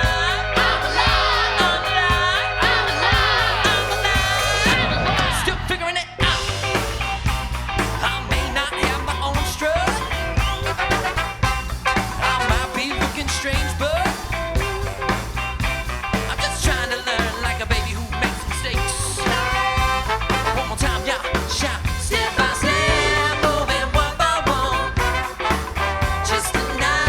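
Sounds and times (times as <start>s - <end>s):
soul band playing instrumental: 0.0s - 5.1s, 6.2s - 27.0s.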